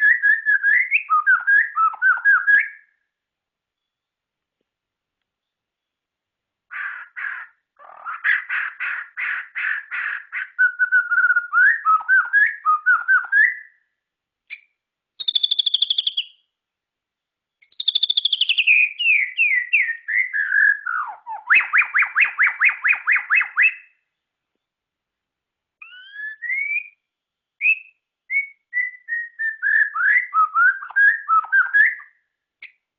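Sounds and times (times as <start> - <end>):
bird singing whistled phrases: 0.0 - 3.0, 10.4 - 13.8, 14.5 - 16.5, 17.6 - 24.0, 25.8 - 27.0, 27.6 - 32.2.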